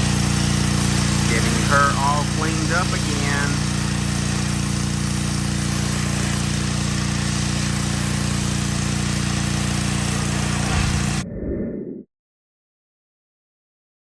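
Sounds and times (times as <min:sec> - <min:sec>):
pressure washer engine humming: 0:00.0 - 0:11.2
water spray hissing: 0:00.0 - 0:11.2.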